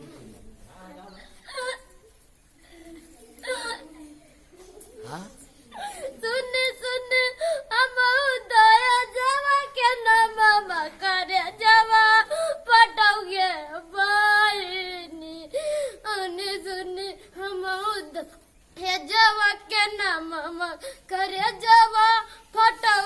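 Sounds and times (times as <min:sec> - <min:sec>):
boy singing folk song: 0:05.8 - 0:23.0.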